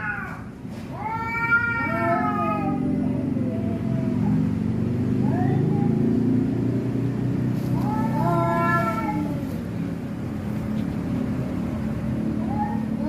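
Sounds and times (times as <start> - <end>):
cat meowing: 0.0 - 4.4, 7.8 - 9.6.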